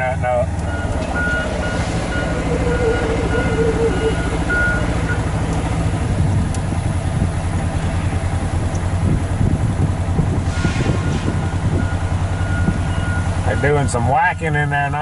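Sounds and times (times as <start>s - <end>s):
machinery engine running: 0.4s - 13.9s
backup alarm beeping: 0.7s - 5.3s, 11.0s - 14.1s.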